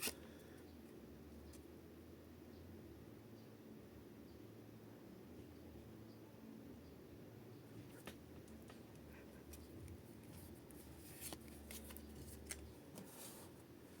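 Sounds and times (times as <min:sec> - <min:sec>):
soft rustles of card packaging: 0:07.8 - 0:14.0.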